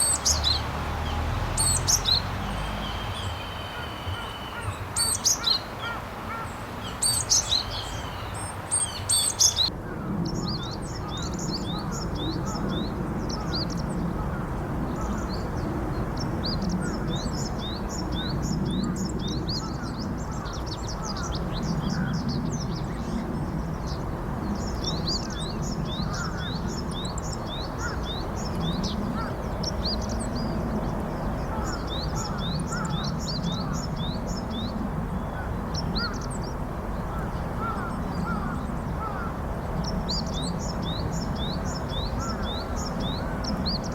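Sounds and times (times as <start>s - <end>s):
low background noise: 0.0s - 10.3s
birds calling: 0.0s - 15.7s, 24.6s - 43.9s.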